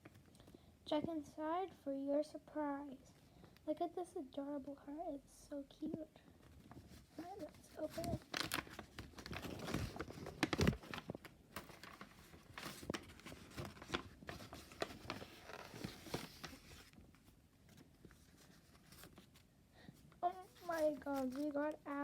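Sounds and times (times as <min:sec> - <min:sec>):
plastic bag rustling and tearing: 0:06.6 - 0:19.4, 0:20.3 - 0:22.0.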